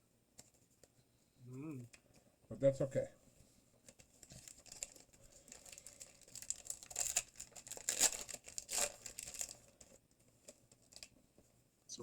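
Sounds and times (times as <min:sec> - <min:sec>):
foil wrapper crinkling: 0:03.8 - 0:11.2
foil wrapper ripping: 0:04.2 - 0:09.9.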